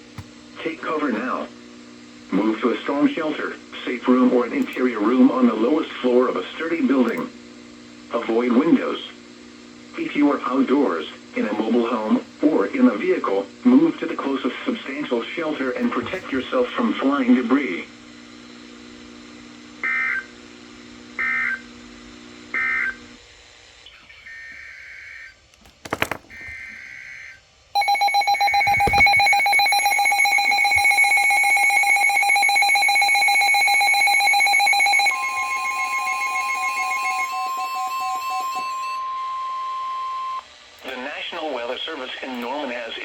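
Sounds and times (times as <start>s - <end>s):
click: 7.1s - 7.3s
warbling data bursts: 27.8s - 39.2s
steady alert tone: 27.8s - 39.7s
two-tone attention signal: 27.8s - 40.4s.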